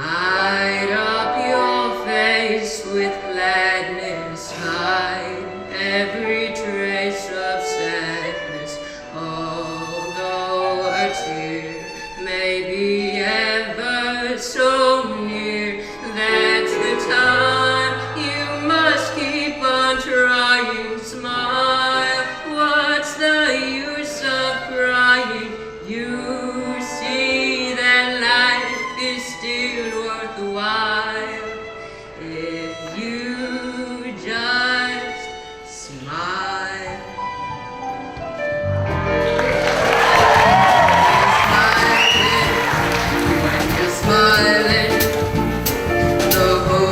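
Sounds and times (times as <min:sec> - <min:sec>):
instrumental accompaniment: 0:36.9 - 0:46.9.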